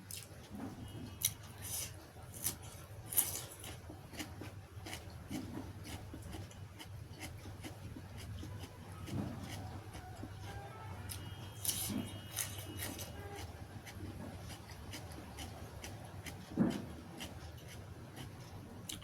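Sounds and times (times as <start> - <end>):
chewing and wet mouth clicks: 3.2 - 10.3, 11.1 - 19.0.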